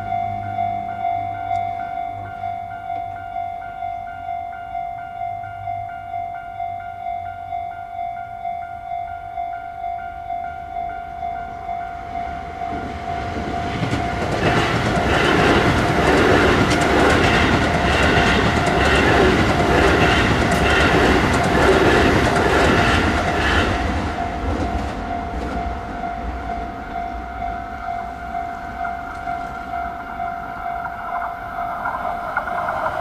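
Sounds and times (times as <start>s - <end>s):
train wheels clattering over rails: 12.7s - 25.7s, 30.8s - 33.0s
level crossing alarm ringing: 22.8s - 33.0s.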